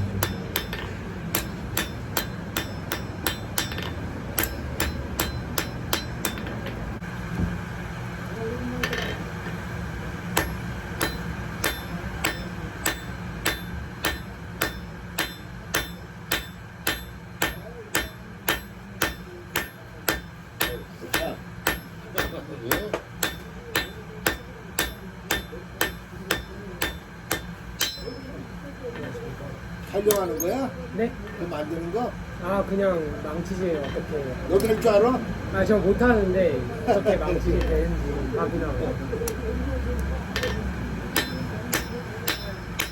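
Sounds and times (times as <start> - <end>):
hammer striking metal on anvil: 0.0 - 6.9, 8.8 - 29.2, 40.3 - 42.9.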